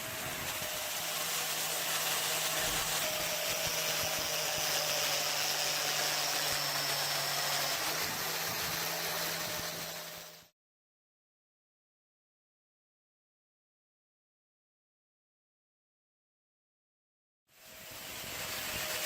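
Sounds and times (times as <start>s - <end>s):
power tool humming and hissing: 0.0s - 10.5s, 17.5s - 19.0s.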